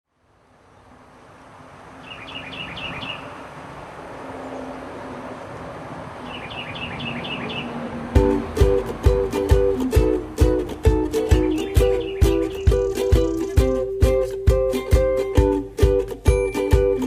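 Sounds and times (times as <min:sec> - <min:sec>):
bird chirping: 0:02.0 - 0:03.5, 0:06.2 - 0:08.4, 0:10.9 - 0:14.2
background hiss: 0:08.2 - 0:16.3
ukulele music with beat: 0:08.2 - 0:17.0.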